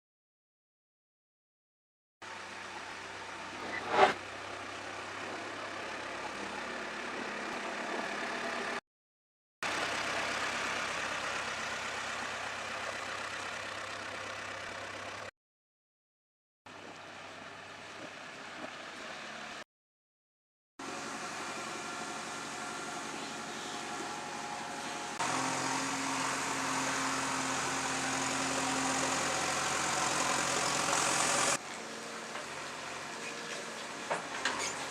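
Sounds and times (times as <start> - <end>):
diesel engine running: 2.3 - 8.8, 9.7 - 15.3, 20.8 - 34.9.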